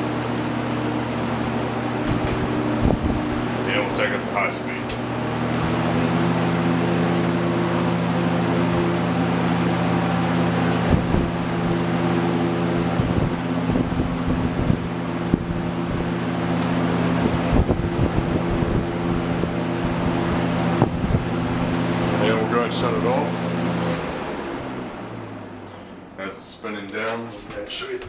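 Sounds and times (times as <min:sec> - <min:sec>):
box fan running: 0:00.0 - 0:28.0
wind buffeting microphone: 0:01.8 - 0:06.8, 0:10.8 - 0:22.2.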